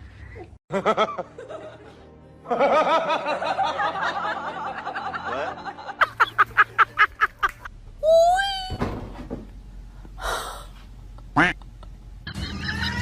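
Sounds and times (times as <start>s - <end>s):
person laughing: 5.0s - 7.7s, 11.2s - 13.0s.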